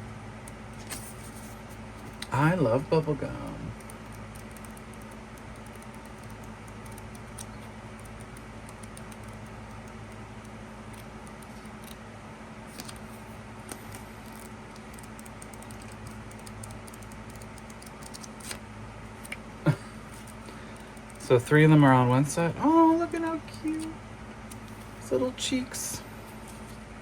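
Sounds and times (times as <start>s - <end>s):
low electrical hum: 0.0s - 27.0s
card and plastic pieces clicking: 14.2s - 18.6s.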